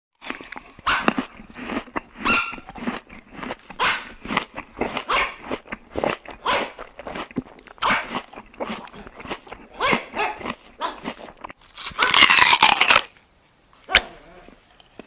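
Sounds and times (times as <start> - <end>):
dog barking: 0.8 - 1.3, 2.2 - 2.6, 3.7 - 4.3, 5.0 - 5.6, 6.4 - 6.8, 7.8 - 8.2, 9.8 - 11.1.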